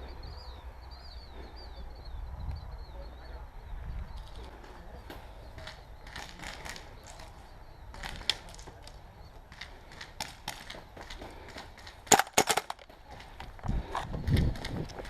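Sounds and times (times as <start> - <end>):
airsoft guns firing: 12.0 - 12.8.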